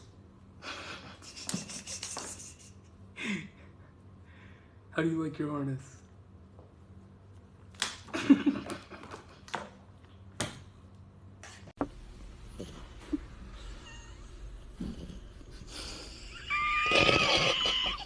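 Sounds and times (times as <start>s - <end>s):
cat meowing: 16.4s - 18.0s.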